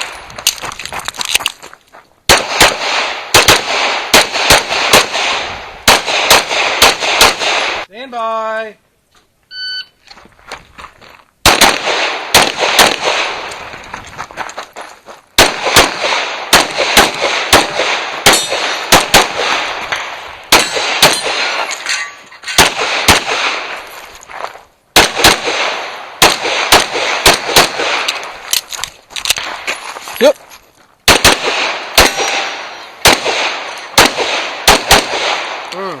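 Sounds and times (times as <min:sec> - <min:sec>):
pistol shots with ringing echo: 0:02.3 - 0:07.9, 0:11.4 - 0:13.5, 0:15.4 - 0:23.8, 0:25.0 - 0:28.4, 0:31.1 - 0:35.7.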